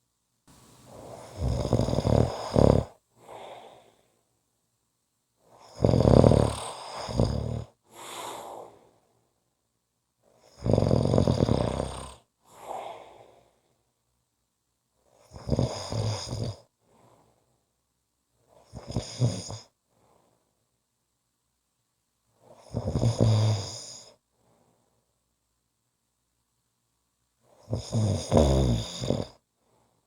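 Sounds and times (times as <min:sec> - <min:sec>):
quiet breathing: 0:00.5 - 0:04.4, 0:05.4 - 0:09.4, 0:11.6 - 0:14.0, 0:15.0 - 0:17.8, 0:18.4 - 0:20.7, 0:22.3 - 0:25.2, 0:29.0 - 0:30.0
person snoring loudly: 0:01.2 - 0:02.9, 0:05.6 - 0:07.7, 0:10.5 - 0:12.2, 0:15.3 - 0:16.6, 0:18.8 - 0:19.6, 0:22.7 - 0:24.0, 0:27.7 - 0:29.3.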